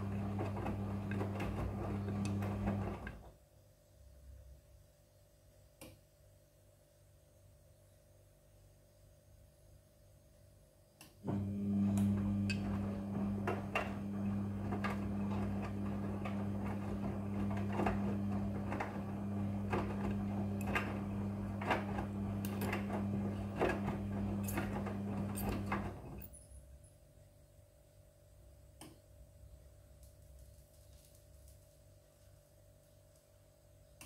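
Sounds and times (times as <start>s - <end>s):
washing machine humming: 0.0s - 3.3s, 11.2s - 26.3s.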